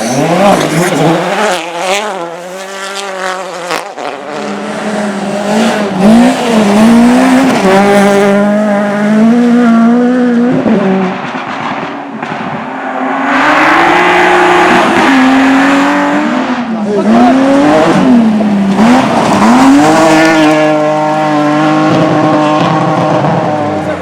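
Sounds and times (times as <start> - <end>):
race car engine revving: 0.0 - 24.0.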